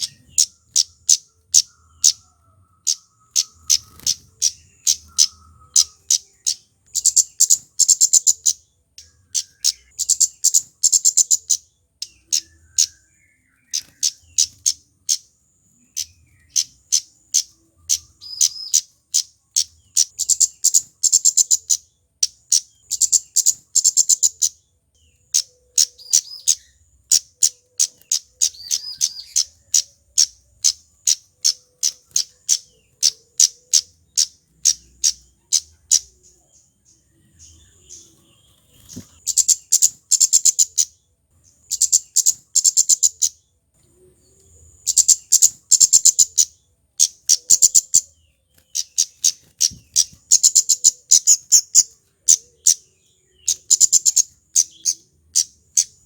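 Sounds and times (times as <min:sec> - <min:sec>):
bird calling sharp ticking notes: 0:00.0 - 0:36.4, 0:38.8 - 0:41.0, 0:41.7 - 0:43.5, 0:44.9 - 0:48.1, 0:48.7 - 0:56.0.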